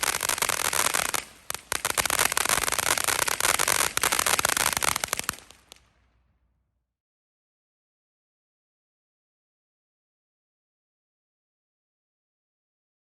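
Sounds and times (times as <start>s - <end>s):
firework fountain crackling: 0.0s - 6.1s.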